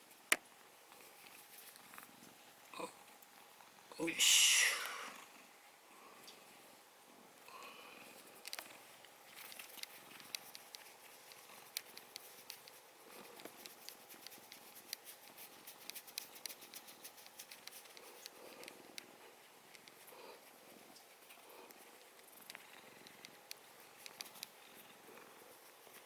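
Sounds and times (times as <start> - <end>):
cat clicking and ticking: 9.4 - 26.0.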